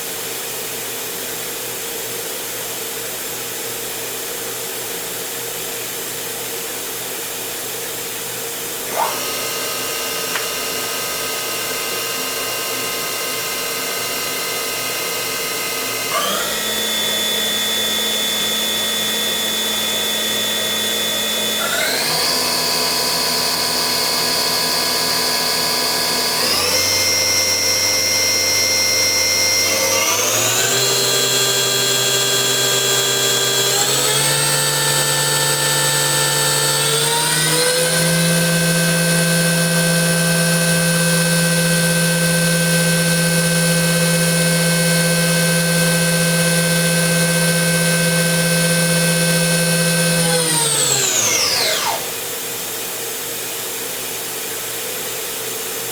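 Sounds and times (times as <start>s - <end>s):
machine spindle whine: 8.8s - 52.5s.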